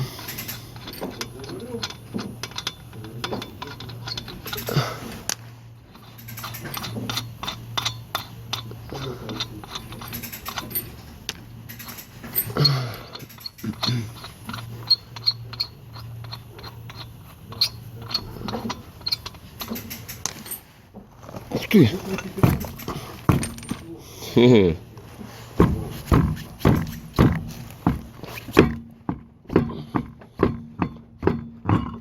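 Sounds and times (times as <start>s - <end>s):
winch motor humming: 0.0s - 20.6s
sharp clicks and metallic knocks: 0.0s - 24.0s, 25.2s - 32.0s.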